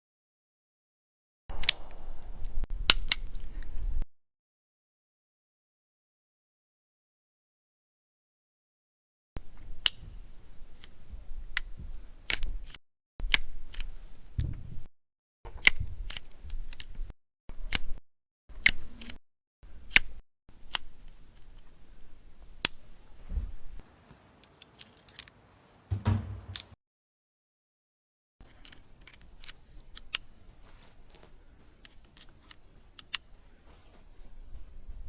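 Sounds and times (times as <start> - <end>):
dull metal clatter: 25.9 - 26.8.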